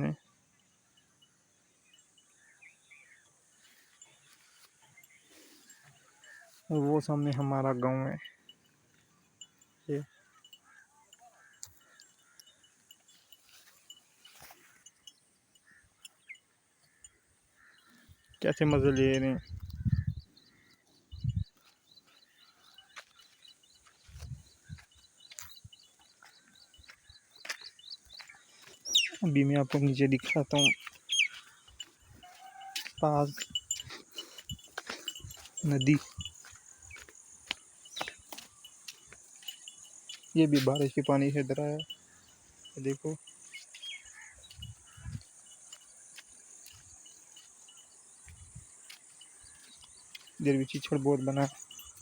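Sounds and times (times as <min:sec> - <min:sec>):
bird chirping: 0:01.8 - 0:52.0
wind bumps on microphone: 0:19.4 - 0:20.2, 0:21.2 - 0:21.5
single bird calls: 0:30.5 - 0:33.6.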